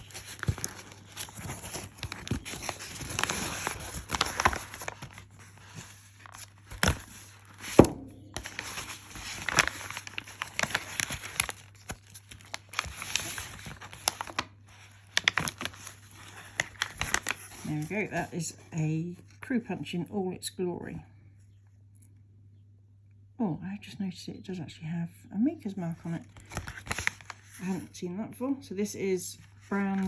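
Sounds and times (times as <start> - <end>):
paper crinkling and rustling: 0.0 - 18.6, 25.7 - 28.0, 29.3 - 30.0.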